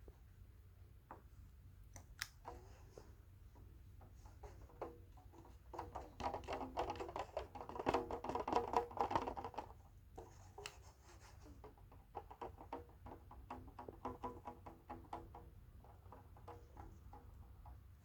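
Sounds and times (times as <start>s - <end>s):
tapping and scratching: 4.2s - 17.8s.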